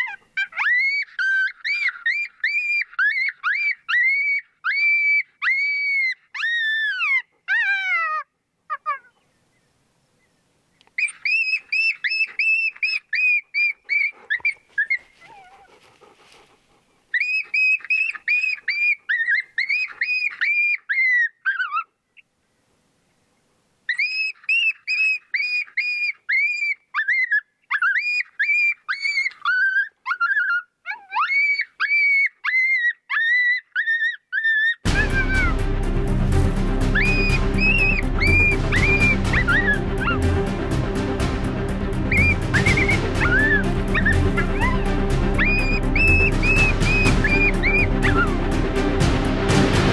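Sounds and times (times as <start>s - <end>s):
dog yelping: 0.0s - 9.2s, 11.0s - 16.3s, 17.1s - 21.9s, 23.9s - 34.8s.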